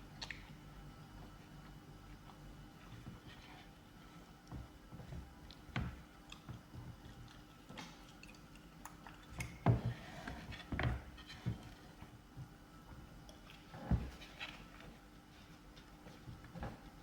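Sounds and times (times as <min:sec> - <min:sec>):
close chewing mouth sounds: 0:05.5 - 0:09.6.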